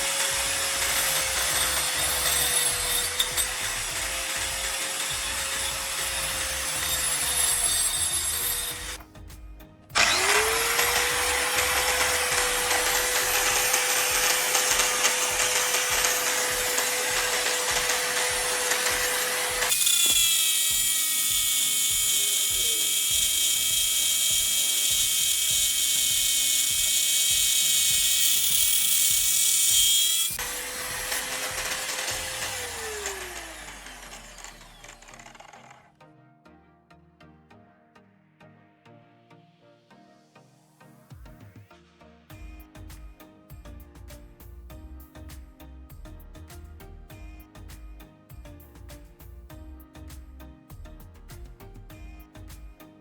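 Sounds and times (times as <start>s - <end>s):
grinder motor winding down: 0.0s - 9.0s, 10.0s - 35.9s
angle grinder cutting: 0.0s - 9.1s, 9.9s - 35.9s.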